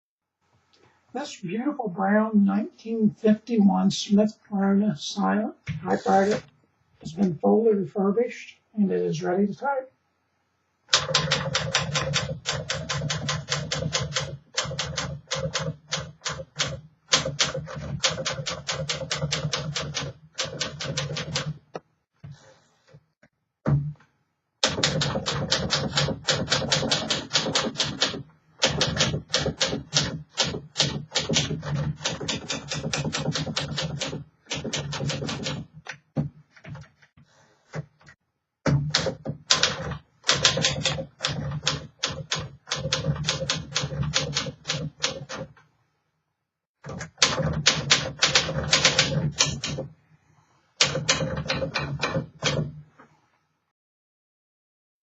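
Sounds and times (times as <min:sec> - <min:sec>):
manual typewriter typing: 0:10.9 - 0:21.6, 0:24.6 - 0:36.0, 0:38.7 - 0:45.6, 0:46.9 - 0:49.9, 0:50.8 - 0:52.7.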